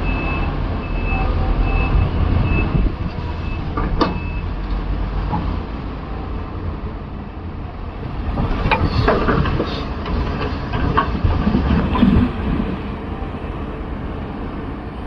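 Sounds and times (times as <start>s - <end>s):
truck reversing beeper: 0.0s - 4.6s
diesel engines rumbling: 0.0s - 15.0s.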